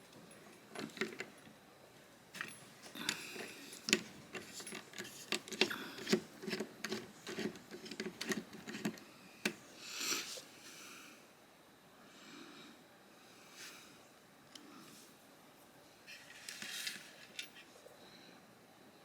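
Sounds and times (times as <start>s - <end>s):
brief rustle: 16.1s - 17.8s.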